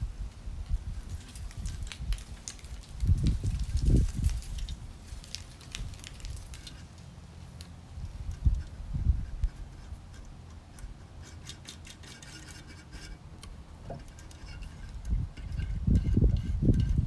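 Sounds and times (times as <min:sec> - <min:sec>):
small hand tools clicking: 0:09.4 - 0:17.0.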